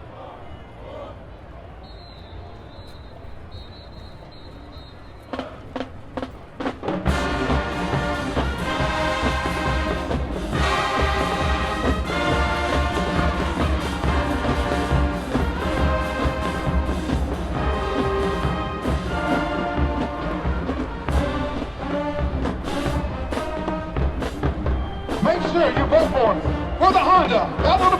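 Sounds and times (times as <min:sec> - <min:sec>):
heavy low drums: 0:05.3 - 0:27.9
percussion hits: 0:05.8 - 0:27.9
brass playing sustained chords: 0:07.0 - 0:24.2.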